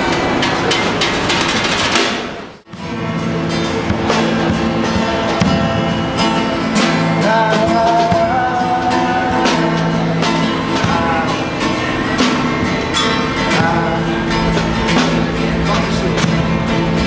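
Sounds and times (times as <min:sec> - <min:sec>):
acoustic guitar: 0:00.0 - 0:17.0
drums: 0:00.0 - 0:17.0
person singing: 0:02.8 - 0:12.6, 0:13.2 - 0:16.5.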